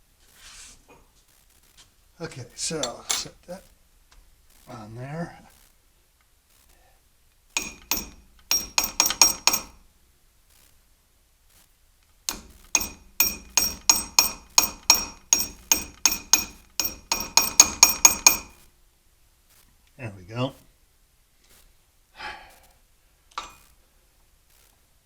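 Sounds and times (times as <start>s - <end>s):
metallic taps on battery clamp: 7.6s - 9.8s, 12.3s - 18.6s.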